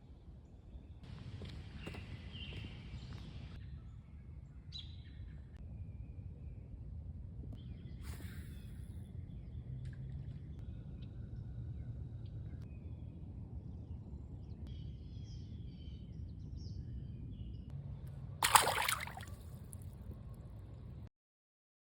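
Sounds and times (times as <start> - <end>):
loud splash in water: 18.4 - 19.4.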